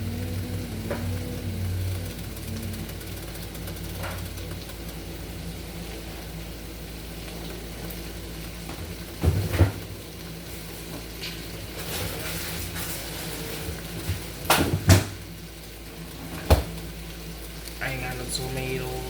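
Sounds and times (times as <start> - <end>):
low hum: 0.0 - 14.6
food sizzling in a pan: 0.0 - 19.0.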